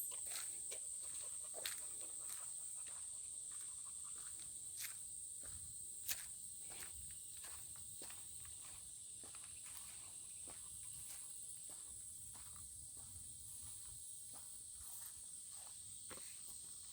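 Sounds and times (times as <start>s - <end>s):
insects chorus: 0.0s - 16.9s.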